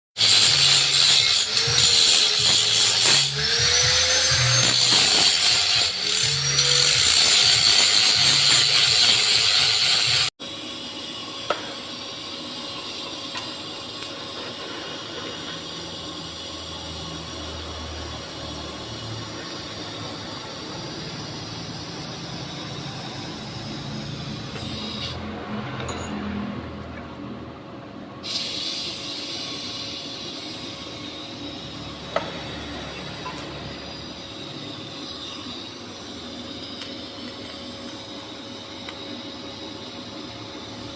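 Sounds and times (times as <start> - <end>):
angle grinder grinding steel: 0.2 - 10.3.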